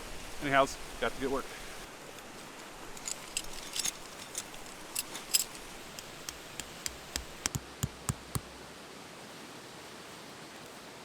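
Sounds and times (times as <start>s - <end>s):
camping gear clicking and knocking: 1.9s - 8.5s.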